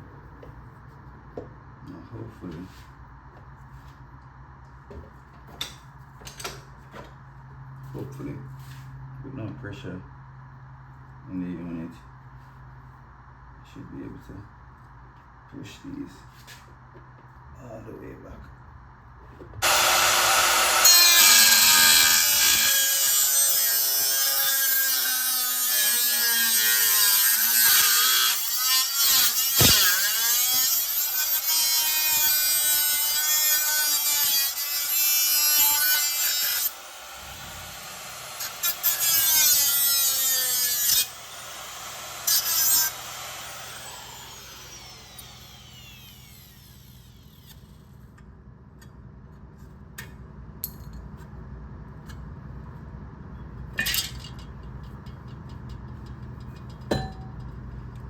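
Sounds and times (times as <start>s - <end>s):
power tool whining: 19.6s - 47.8s.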